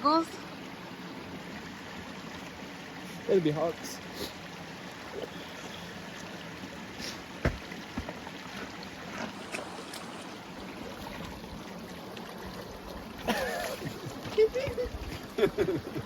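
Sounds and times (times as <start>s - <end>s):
creek water flowing: 0.0s - 16.0s
short knocks: 7.4s - 8.2s.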